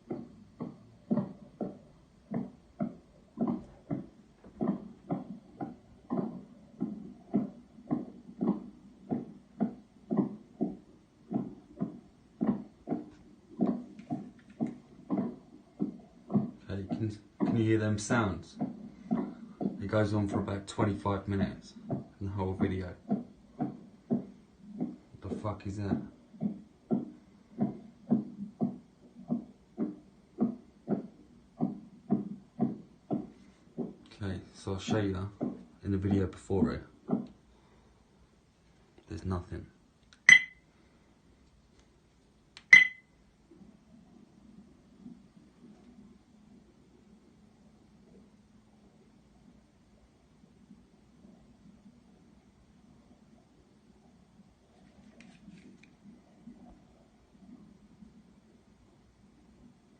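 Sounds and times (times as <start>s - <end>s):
dull thumps or knocks: 0.0s - 20.6s, 21.4s - 34.1s.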